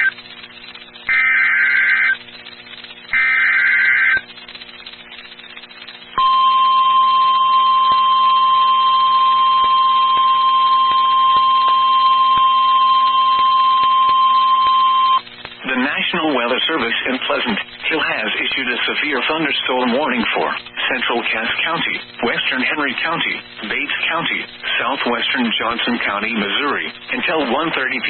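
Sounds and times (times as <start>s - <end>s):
steady warning alarm tone: 0.0s - 15.3s
harsh digital data bursts: 0.0s - 28.0s.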